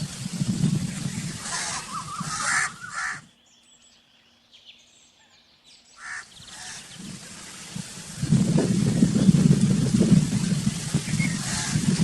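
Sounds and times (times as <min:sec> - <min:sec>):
crow cawing: 0:01.5 - 0:03.3, 0:06.0 - 0:06.8.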